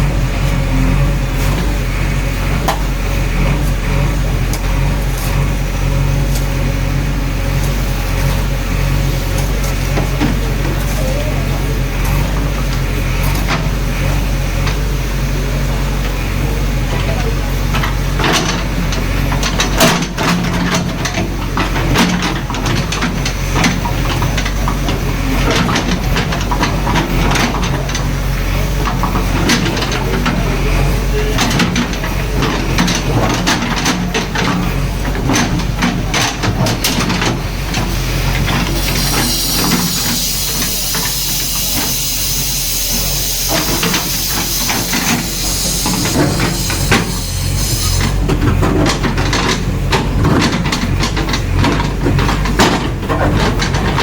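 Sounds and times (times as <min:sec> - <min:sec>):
diesel engine running: 0:00.0 - 0:54.0
sharp knocks and clatter: 0:17.0 - 0:42.0, 0:43.5 - 0:54.0
loud high hiss: 0:38.8 - 0:48.1.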